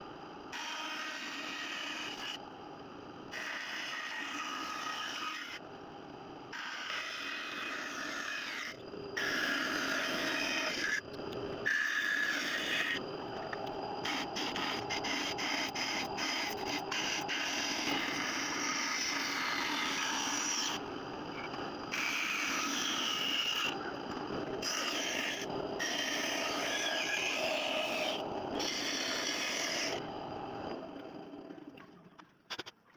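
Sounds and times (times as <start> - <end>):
band saw cutting wood: 24.6 - 30.0.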